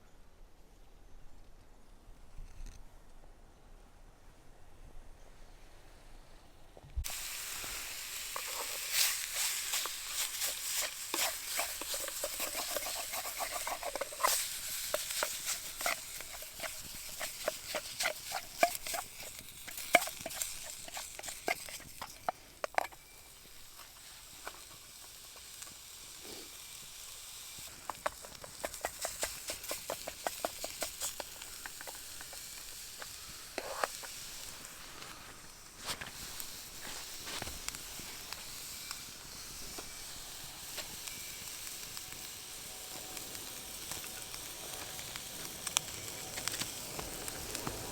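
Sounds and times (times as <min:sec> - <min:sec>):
food sizzling in a pan: 0:07.0 - 0:47.9
utensil scraping a pan: 0:07.1 - 0:25.6, 0:27.7 - 0:35.2.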